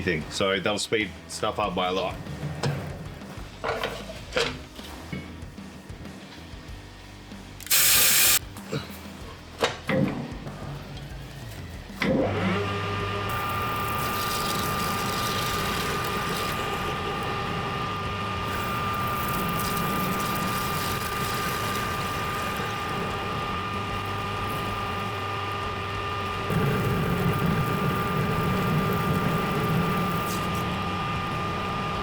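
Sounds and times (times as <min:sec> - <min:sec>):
metal lathe whining: 0:12.1 - 0:32.0.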